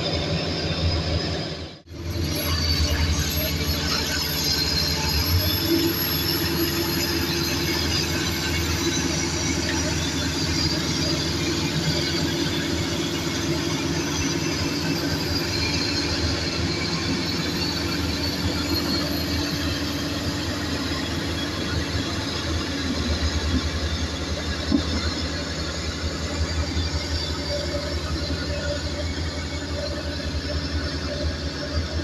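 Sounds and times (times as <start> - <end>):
diesel engines running: 0.0 - 32.0.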